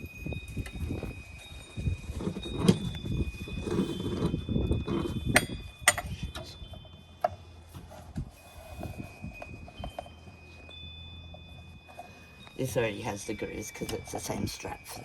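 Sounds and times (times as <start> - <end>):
faint steady high tones: 5.3 - 15.0.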